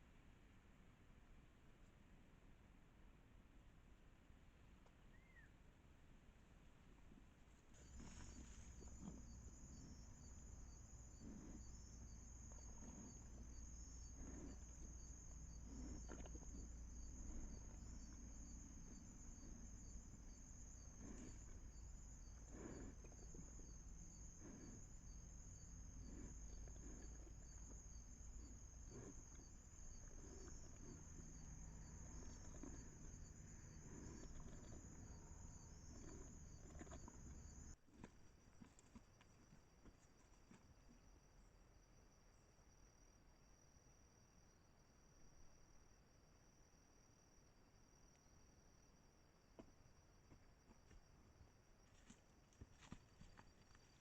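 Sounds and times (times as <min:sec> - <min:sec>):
insects chirring: 0:07.6 - 0:54.0.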